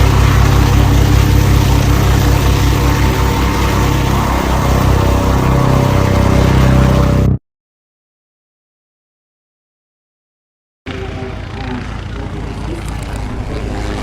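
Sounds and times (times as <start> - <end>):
engine running steadily: 0.0 - 7.3, 10.9 - 14.0.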